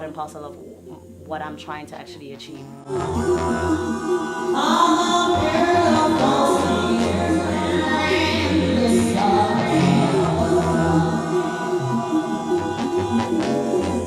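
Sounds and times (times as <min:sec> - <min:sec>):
woman singing: 0:02.9 - 0:13.3.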